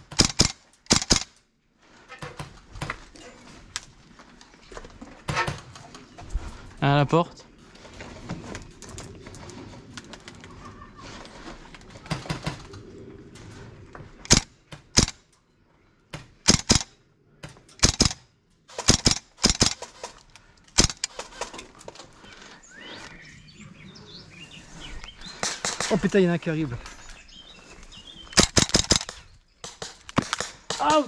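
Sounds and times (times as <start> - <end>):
airsoft guns firing: 0.1 - 1.3, 16.4 - 16.9, 17.8 - 20.0, 28.4 - 31.0.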